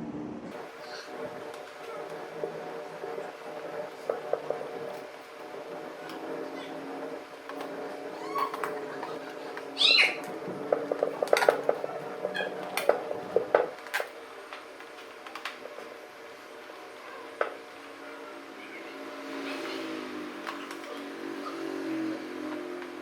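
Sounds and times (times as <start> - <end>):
low background tones: 0.0 - 23.0
cat meowing: 8.2 - 8.7.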